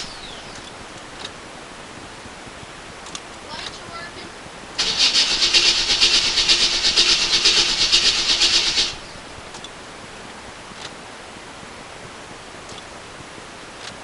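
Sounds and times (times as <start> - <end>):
starter cranking engine: 4.8 - 9.3.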